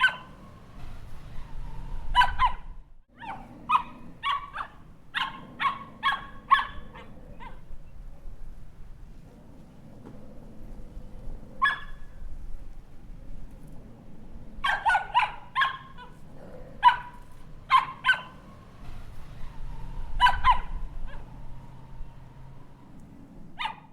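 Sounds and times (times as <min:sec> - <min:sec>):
puppy yapping: 0:00.0 - 0:00.6, 0:02.1 - 0:07.7, 0:11.6 - 0:12.1, 0:14.6 - 0:21.7, 0:23.6 - 0:23.9.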